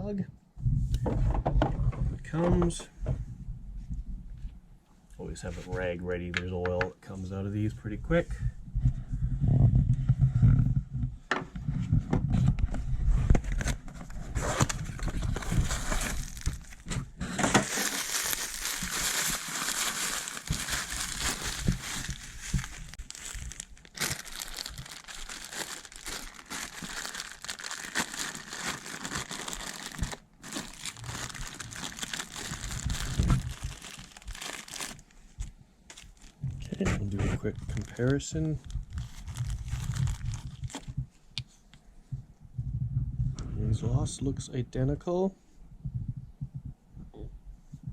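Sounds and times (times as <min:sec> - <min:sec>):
plastic packaging crinkling: 0:14.4 - 0:36.4, 0:37.4 - 0:41.0.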